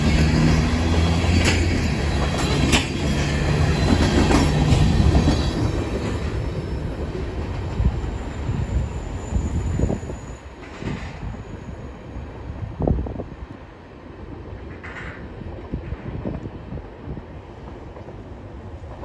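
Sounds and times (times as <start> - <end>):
train wheel clicks: 0.0 - 6.4
train rolling past: 0.0 - 19.0.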